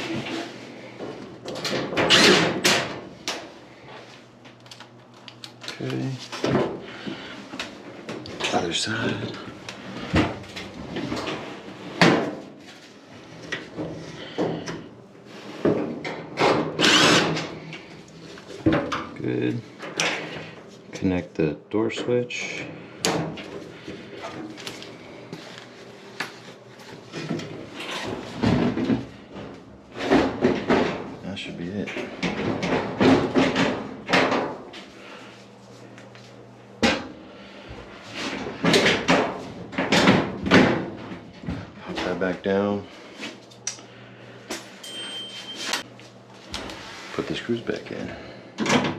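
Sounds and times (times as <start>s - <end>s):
power drill driving screws: 16.8s - 17.4s.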